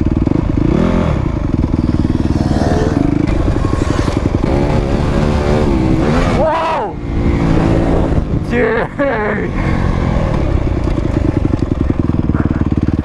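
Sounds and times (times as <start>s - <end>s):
dirt bike engine revving: 0.0s - 13.0s.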